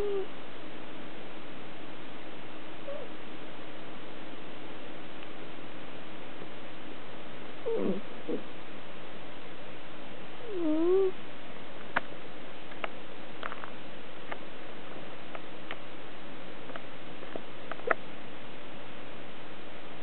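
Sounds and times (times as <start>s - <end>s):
cat snoring: 0.0s - 0.3s, 7.6s - 8.5s, 10.4s - 11.2s.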